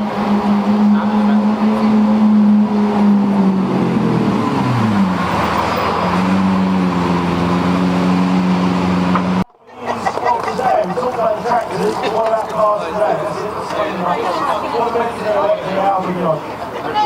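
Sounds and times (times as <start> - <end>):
sports car engine revving high: 0.0 - 9.5.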